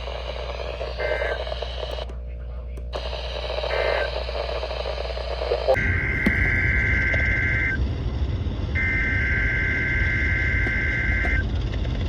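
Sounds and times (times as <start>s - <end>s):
buzzing digital tone bursts: 0.0s - 2.0s, 3.0s - 7.8s
low rumble: 5.8s - 12.0s.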